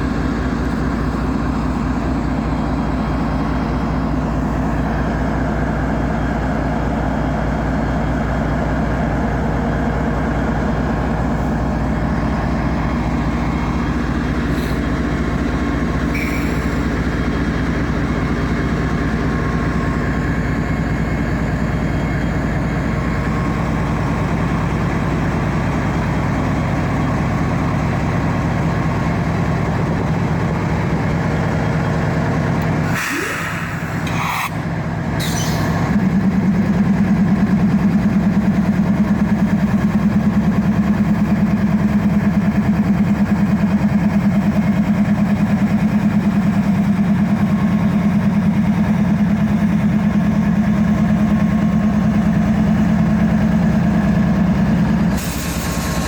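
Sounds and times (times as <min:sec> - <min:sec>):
diesel locomotive running: 0:00.0 - 0:56.0
train cars rolling on rails: 0:09.6 - 0:56.0
high squeaks: 0:35.2 - 0:35.9.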